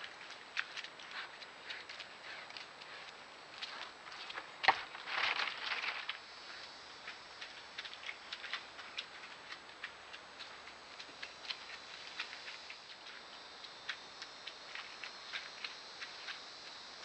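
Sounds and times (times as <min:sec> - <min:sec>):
rustling: 0:03.7 - 0:06.6.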